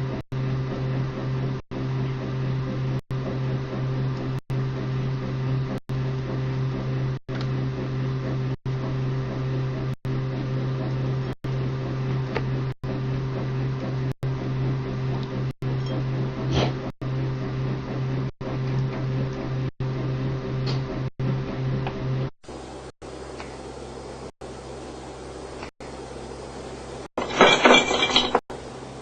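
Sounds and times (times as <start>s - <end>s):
machine hum with low drone: 0.0s - 29.0s.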